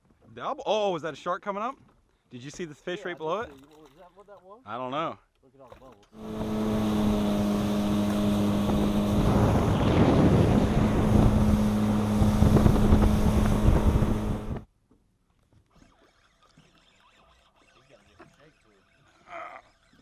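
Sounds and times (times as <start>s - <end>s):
boat engine hum: 6.2s - 14.6s
rush of wind and water: 6.2s - 14.6s.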